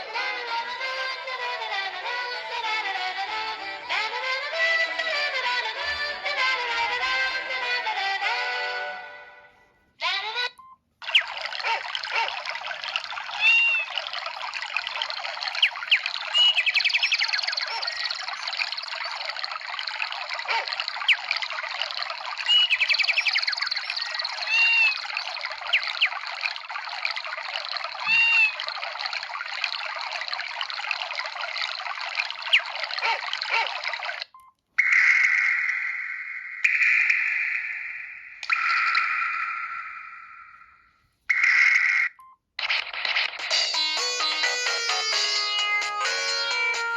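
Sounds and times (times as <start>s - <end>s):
trickling water ringtone: 10.6s - 42.4s, 43.4s - 46.9s
rising and falling chirps: 34.8s - 41.5s.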